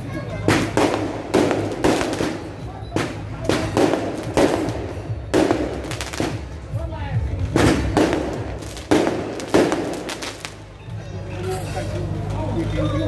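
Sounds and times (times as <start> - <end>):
firecracker bangs: 0.4 - 6.6, 7.5 - 10.6.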